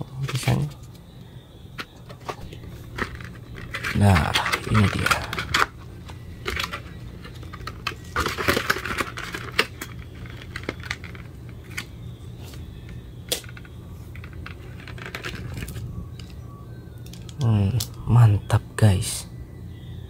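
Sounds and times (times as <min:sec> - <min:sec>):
steady low hum: 0:00.0 - 0:20.0
plastic clicks taps and rustles: 0:01.8 - 0:11.9.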